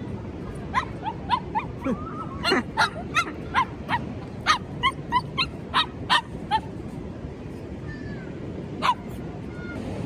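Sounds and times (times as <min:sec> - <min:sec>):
dog yipping and whining: 0:00.7 - 0:06.7.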